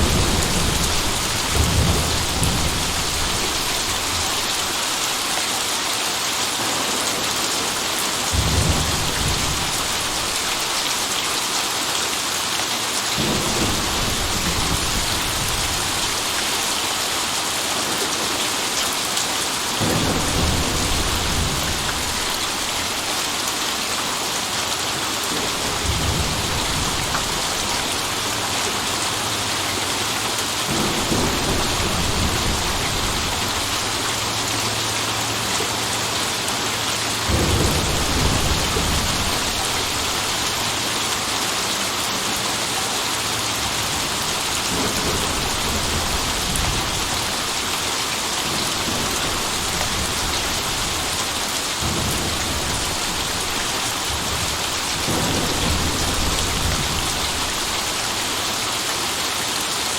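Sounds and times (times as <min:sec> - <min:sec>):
low rolls of thunder: 0:00.0 - 0:05.0, 0:08.3 - 0:10.8, 0:13.2 - 0:17.1, 0:19.8 - 0:23.1, 0:25.5 - 0:29.7, 0:30.7 - 0:34.7, 0:37.3 - 0:40.9, 0:43.6 - 0:57.9
steady rain falling: 0:00.0 - 0:59.9.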